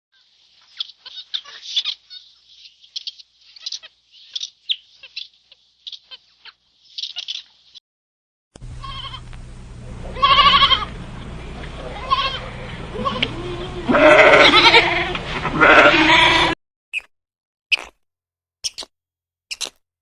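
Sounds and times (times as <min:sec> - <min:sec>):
low hum: 0:08.6 - 0:15.6
goat or sheep bleating: 0:08.8 - 0:09.3, 0:10.1 - 0:10.9, 0:11.8 - 0:16.6
high-pitched chirping: 0:18.6 - 0:18.9, 0:19.5 - 0:19.8.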